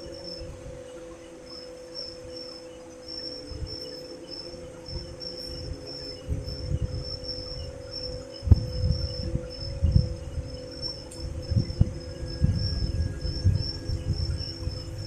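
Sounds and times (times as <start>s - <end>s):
insects chirping in a high trill: 0.0s - 15.0s
steady low hum: 0.0s - 15.0s
low thumps and rumbles: 6.3s - 15.0s.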